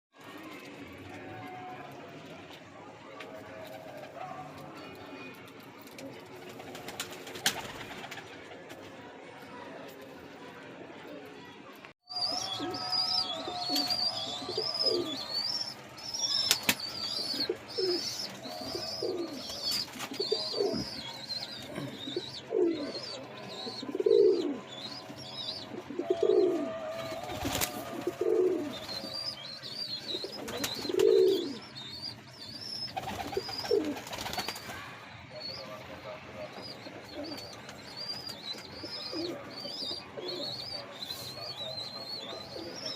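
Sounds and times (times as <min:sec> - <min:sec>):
pigeon cooing: 0:12.1 - 0:31.7, 0:32.9 - 0:34.6, 0:35.4 - 0:42.9
pigeon chicks cheeping: 0:12.1 - 0:42.9.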